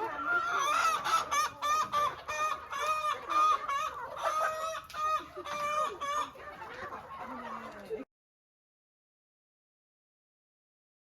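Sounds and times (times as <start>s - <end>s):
chickens clucking: 0.0s - 8.1s.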